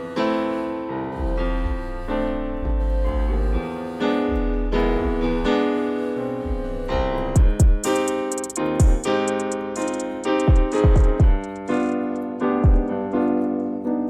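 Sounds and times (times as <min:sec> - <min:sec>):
electric piano chords: 0:00.0 - 0:14.0
falling bass thumps: 0:01.2 - 0:03.6, 0:04.3 - 0:05.5, 0:06.5 - 0:07.8.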